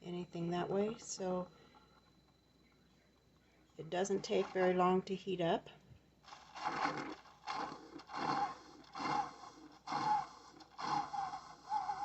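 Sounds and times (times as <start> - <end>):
coffee maker hissing bursts: 6.6 - 12.0.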